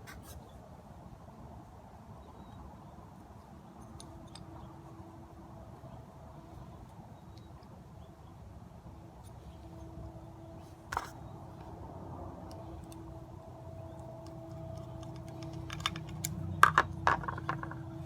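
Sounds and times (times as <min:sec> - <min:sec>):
faint steady hum: 0:00.0 - 0:18.0
small screws clicking: 0:14.2 - 0:17.8.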